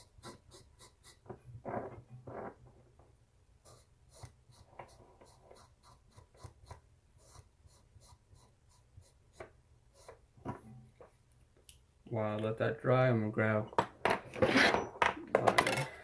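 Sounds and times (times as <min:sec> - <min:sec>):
marker scratching on metal: 0:00.0 - 0:01.3, 0:03.6 - 0:10.2.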